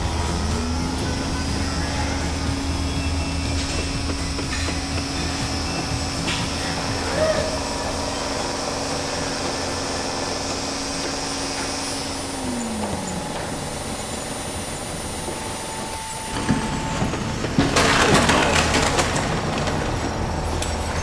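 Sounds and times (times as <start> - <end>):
heavy vehicle engine running: 0.0 - 21.0
knocks and clatter: 2.5 - 7.0, 12.4 - 21.0.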